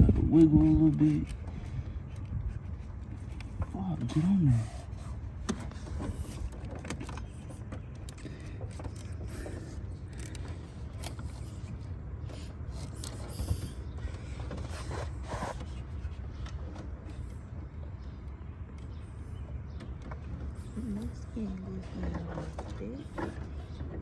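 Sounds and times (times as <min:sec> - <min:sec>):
rubber hose creaking and rubbing: 0:00.0 - 0:16.8
steady low hum: 0:00.0 - 0:24.0.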